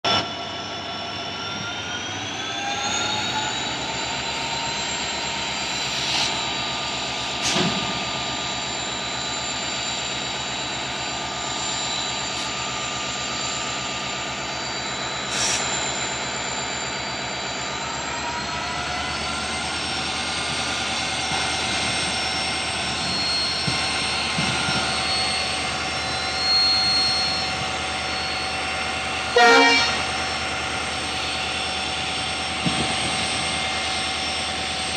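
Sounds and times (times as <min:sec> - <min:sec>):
diesel locomotive engine humming: 0:00.1 - 0:34.9
turbocharger whining: 0:00.1 - 0:34.9.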